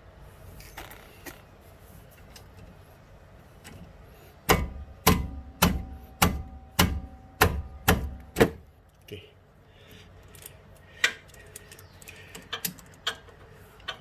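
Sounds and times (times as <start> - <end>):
hand striking spanner: 4.5 - 8.6.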